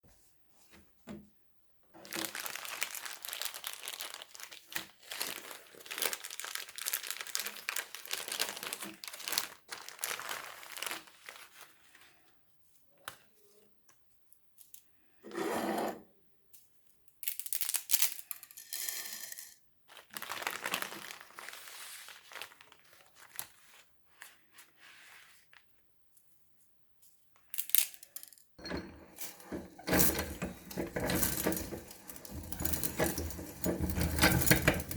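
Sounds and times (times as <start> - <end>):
plastic packaging crinkling and tearing: 2.0 - 11.9, 19.9 - 23.8.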